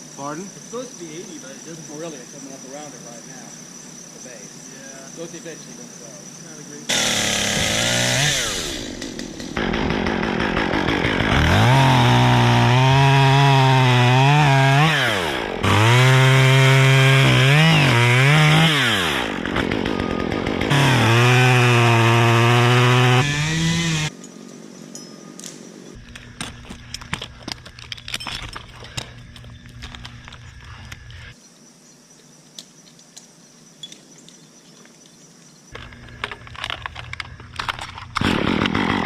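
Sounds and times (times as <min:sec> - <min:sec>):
chainsaw cutting: 0:06.9 - 0:24.1, 0:38.2 - 0:39.0.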